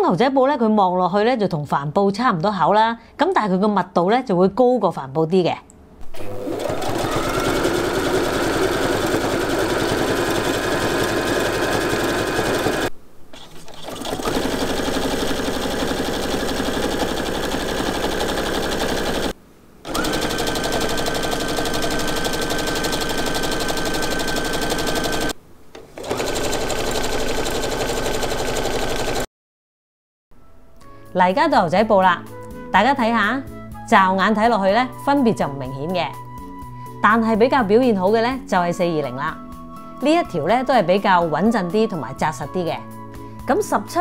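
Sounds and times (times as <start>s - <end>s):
sewing machine stitching denim: 6.1s - 19.3s, 19.9s - 25.4s, 26.0s - 29.3s.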